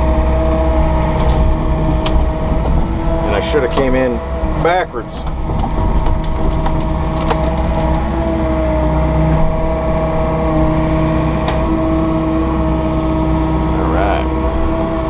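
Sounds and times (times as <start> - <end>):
excavator diesel engine running: 0.0 - 15.0
wood cracking and splintering: 5.2 - 8.4.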